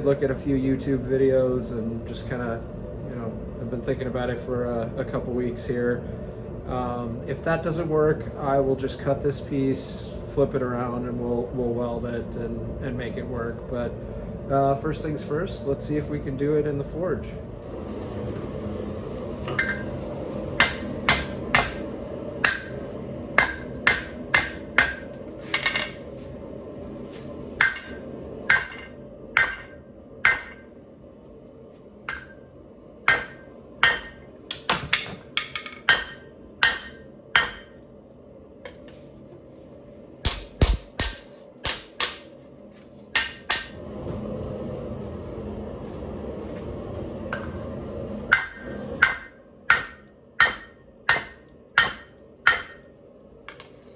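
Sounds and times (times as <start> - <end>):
forge burner running: 0.0 - 53.9
hammer striking steel on anvil: 19.5 - 19.9, 20.6 - 26.0, 27.6 - 30.9, 32.1 - 32.5, 33.1 - 38.0, 40.2 - 43.8, 47.3 - 53.7
high metallic ring: 20.6 - 26.0, 27.6 - 31.1, 33.1 - 38.4, 40.3 - 43.8, 47.3 - 53.6.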